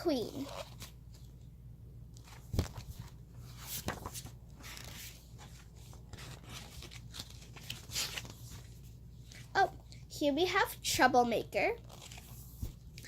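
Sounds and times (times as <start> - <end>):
book pages rustling: 0.2 - 1.4, 2.1 - 10.1, 11.8 - 13.0.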